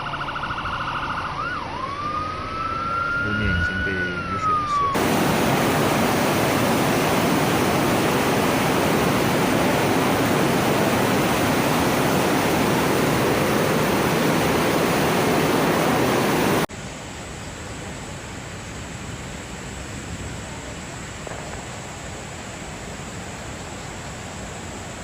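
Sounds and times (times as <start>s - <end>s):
heavy rain: 5.0s - 16.7s
running floodwater: 5.0s - 16.7s.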